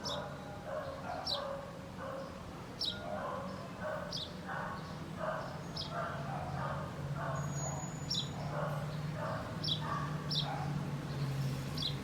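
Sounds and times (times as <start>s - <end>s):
birds chattering calls: 7.4s - 12.0s.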